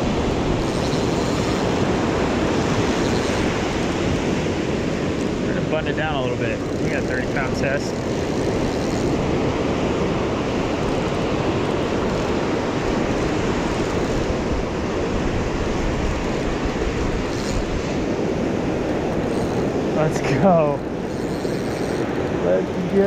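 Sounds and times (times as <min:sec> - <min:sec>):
surf washing on beach: 0:00.0 - 0:23.0
wind on microphone: 0:00.0 - 0:23.0.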